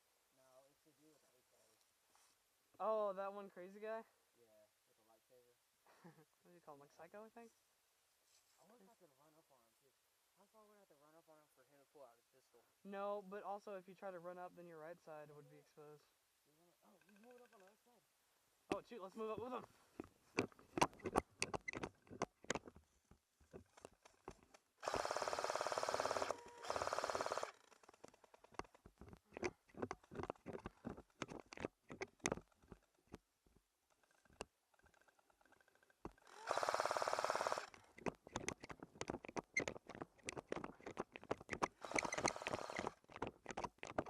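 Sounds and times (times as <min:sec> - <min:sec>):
airsoft gun full-auto burst: 0:24.8 - 0:27.7, 0:36.2 - 0:37.7, 0:41.8 - 0:43.0
clicks of movement: 0:27.5 - 0:33.2, 0:37.6 - 0:44.0.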